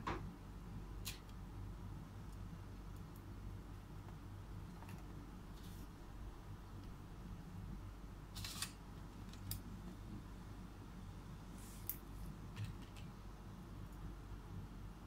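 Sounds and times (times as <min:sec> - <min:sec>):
low steady hum: 0:00.0 - 0:15.0
laptop parts clicking and scraping: 0:08.4 - 0:09.6, 0:12.5 - 0:13.1.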